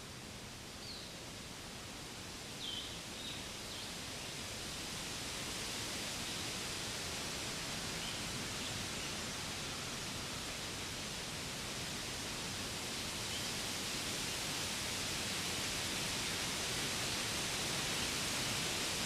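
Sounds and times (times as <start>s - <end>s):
steady forest hiss: 0.0s - 19.0s.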